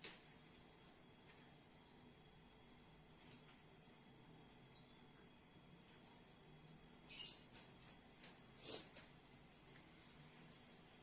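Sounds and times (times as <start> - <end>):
faint background hum: 0.0 - 11.0.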